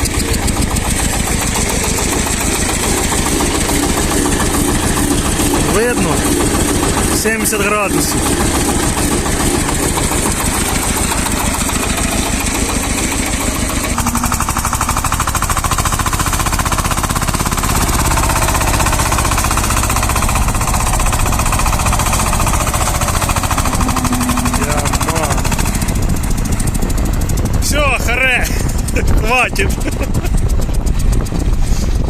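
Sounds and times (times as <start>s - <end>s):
higher rattling tone: 0.0s - 31.5s
tractor diesel engine working hard: 0.0s - 32.0s.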